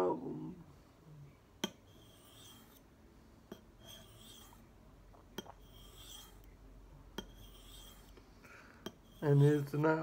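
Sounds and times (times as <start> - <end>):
knife scraping on sharpening stone: 1.6 - 2.9, 3.5 - 4.7, 5.4 - 6.5, 7.2 - 8.2, 8.8 - 9.8.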